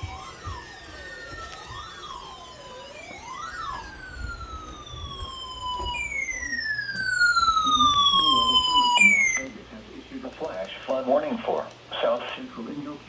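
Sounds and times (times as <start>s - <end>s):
falling siren glides: 0.0s - 9.5s
siren wail: 0.0s - 9.5s.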